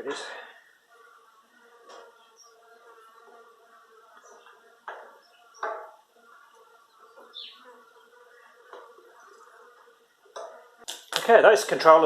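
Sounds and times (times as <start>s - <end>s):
faint bird chirps: 6.8s - 9.6s.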